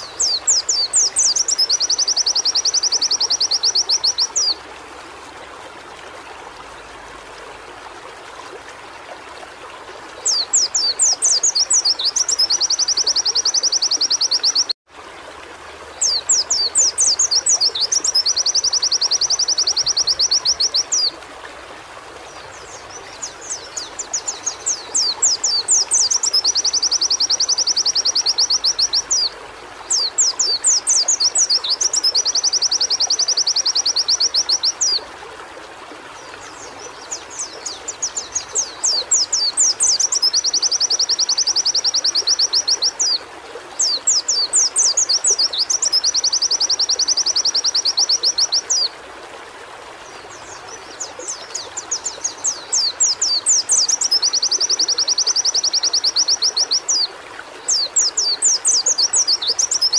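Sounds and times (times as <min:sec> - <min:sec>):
bird singing chirps and trills: 0:00.0 - 0:04.6, 0:10.2 - 0:14.8, 0:16.0 - 0:21.1, 0:22.4 - 0:35.0, 0:36.2 - 0:43.2, 0:43.8 - 0:48.9, 0:50.1 - 0:59.9.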